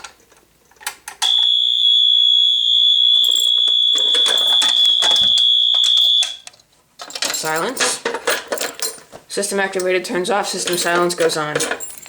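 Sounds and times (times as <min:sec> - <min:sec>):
high-pitched alarm buzzer: 0:01.2 - 0:06.4.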